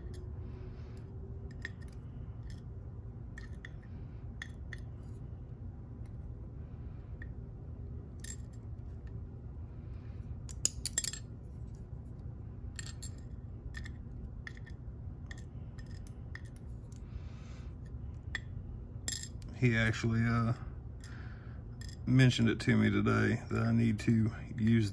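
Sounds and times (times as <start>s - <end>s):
steady low hum: 0.0s - 24.9s
small metallic clicks and clinks: 1.0s - 2.7s, 10.5s - 11.8s, 12.8s - 17.0s.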